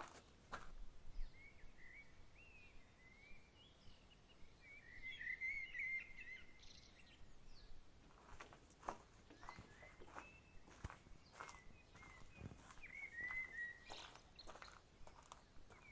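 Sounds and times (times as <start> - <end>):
small birds chirping: 8.2 - 15.9.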